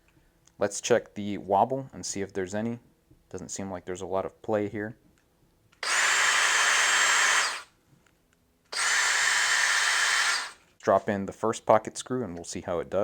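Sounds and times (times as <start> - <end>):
cordless drill motor whining: 5.8 - 7.7, 8.8 - 10.6.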